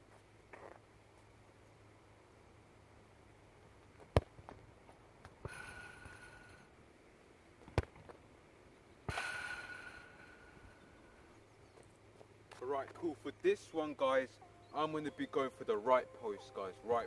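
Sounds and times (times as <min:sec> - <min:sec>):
ball kicked thuds: 0:04.0 - 0:04.6, 0:07.6 - 0:08.2.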